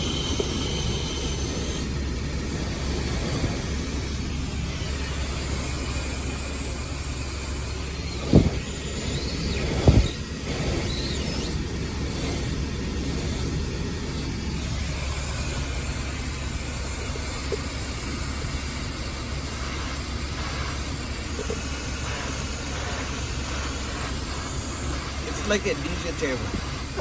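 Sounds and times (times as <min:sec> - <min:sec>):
air conditioning blowing hiss: 0:00.0 - 0:27.0
dull thumps: 0:07.7 - 0:12.7.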